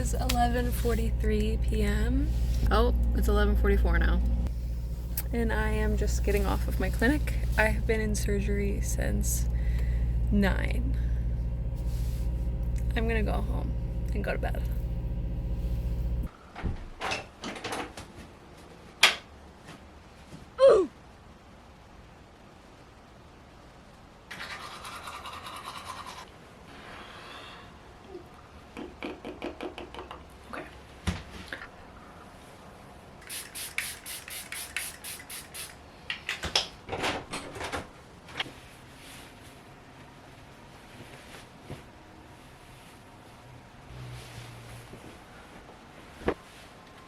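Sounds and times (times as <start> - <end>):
car interior rumble: 0.0 - 16.3
person exclaiming ooh: 20.6 - 21.0
short hissing bursts: 33.2 - 35.9.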